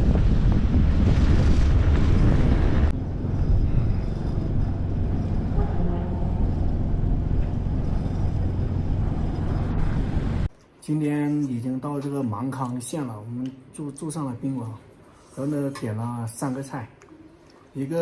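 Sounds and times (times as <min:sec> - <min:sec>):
steady low rumble: 0:00.0 - 0:10.5
wind buffeting microphone: 0:00.0 - 0:10.5.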